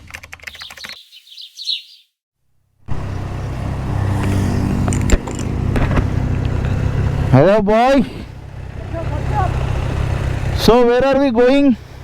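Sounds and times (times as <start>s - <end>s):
birds chirping: 0.5s - 2.2s
motorcycle engine running: 2.8s - 12.0s.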